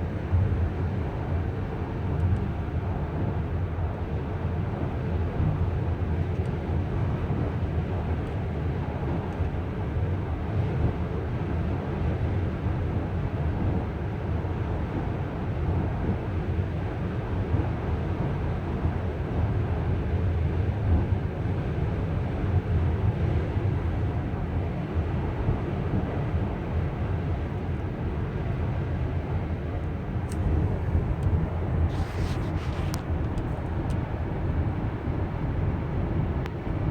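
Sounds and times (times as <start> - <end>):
minivan engine rumble: 27.5 - 36.9.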